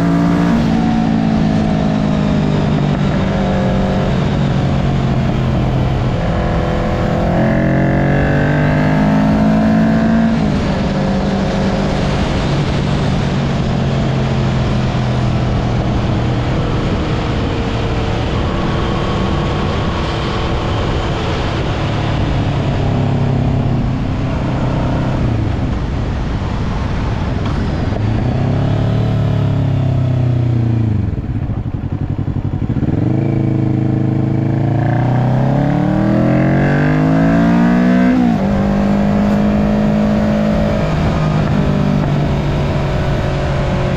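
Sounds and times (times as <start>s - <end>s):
motorcycle engine revving: 0.0s - 43.9s.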